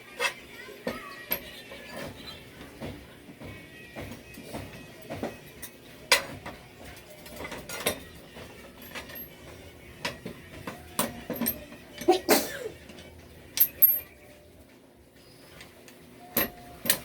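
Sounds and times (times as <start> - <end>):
metal tools clinking and knocking: 5.2 - 12.3, 12.9 - 14.2, 16.2 - 17.0.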